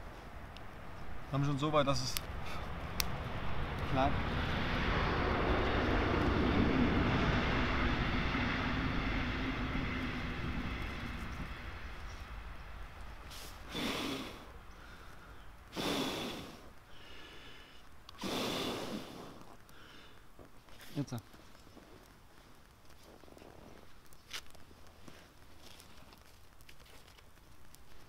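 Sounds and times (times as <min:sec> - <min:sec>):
breath blowing into embers: 0:02.2 - 0:03.5, 0:13.1 - 0:26.6
low engine drone: 0:02.2 - 0:16.7.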